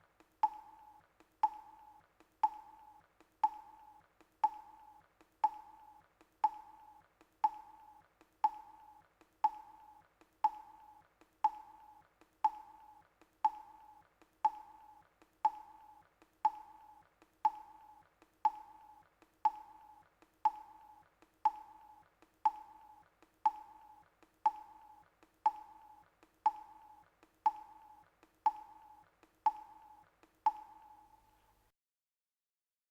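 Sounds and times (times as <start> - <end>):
timer ticking with beeps: 0.0 - 31.5.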